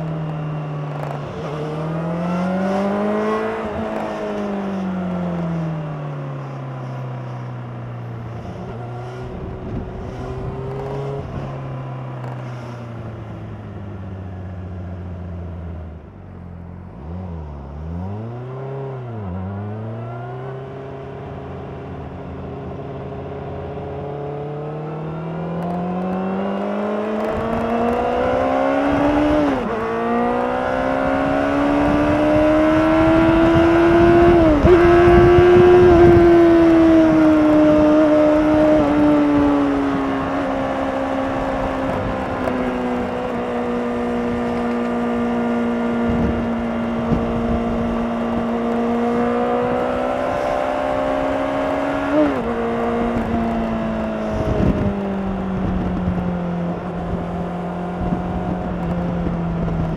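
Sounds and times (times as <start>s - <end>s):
gear upshifts: 0.0s - 14.6s, 25.6s - 57.3s
motorcycle engine revving: 0.0s - 59.9s.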